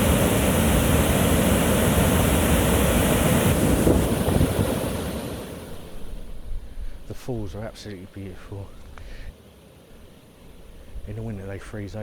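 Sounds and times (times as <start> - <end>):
waterfall rushing: 0.0 - 6.0.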